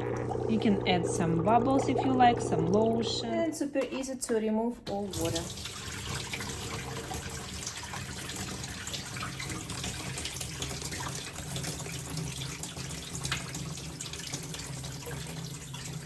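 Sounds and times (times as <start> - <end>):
water running and splashing: 0.0 - 3.3, 5.0 - 16.0
steady low hum: 0.0 - 3.4.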